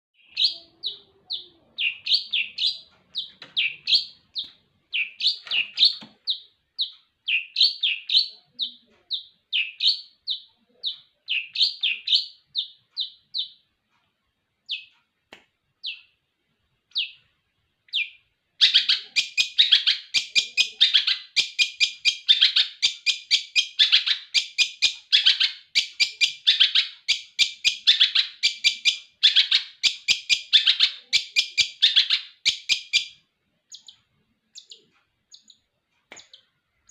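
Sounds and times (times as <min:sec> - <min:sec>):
bird chirping: 0:00.2 - 0:14.0, 0:14.6 - 0:15.1, 0:15.8 - 0:36.9.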